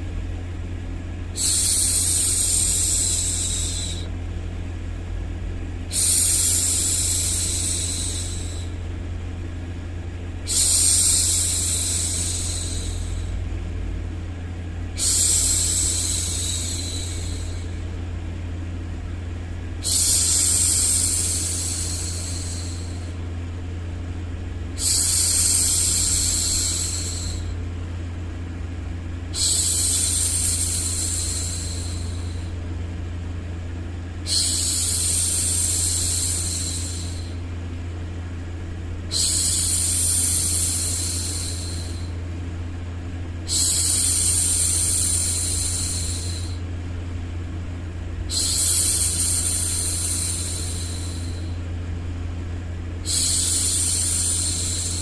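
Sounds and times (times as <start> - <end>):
low hum of white noise: 0.0 - 55.0
woman shushing: 1.4 - 4.1, 10.5 - 13.4, 15.0 - 17.8, 19.8 - 23.1, 34.3 - 37.3, 39.1 - 42.1.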